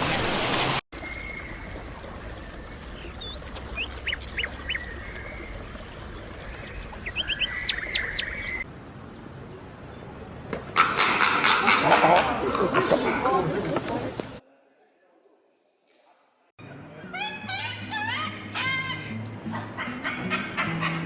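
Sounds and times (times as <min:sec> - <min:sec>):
small birds chirping: 0:01.0 - 0:09.2.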